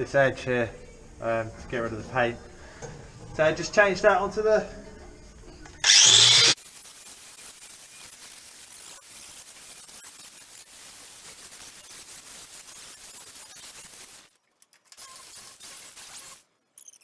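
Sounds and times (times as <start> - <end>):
angle grinder grinding metal: 5.8 - 17.0.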